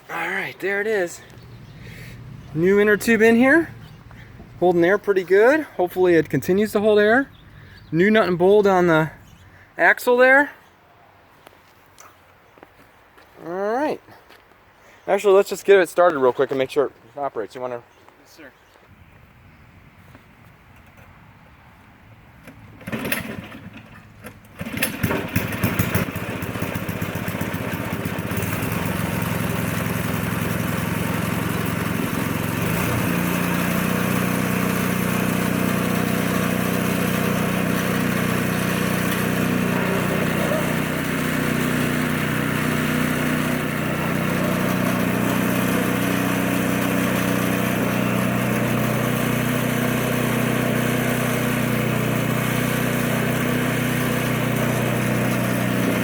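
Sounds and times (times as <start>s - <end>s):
snowblower engine starting and running: 0.1s - 10.4s, 22.4s - 56.0s.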